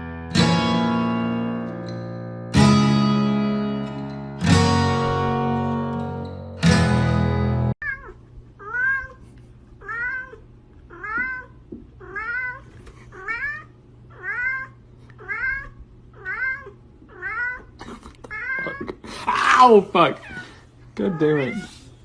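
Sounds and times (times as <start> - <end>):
music: 0.0 - 7.8
cat meowing: 7.8 - 9.2, 9.8 - 18.9, 20.2 - 21.9.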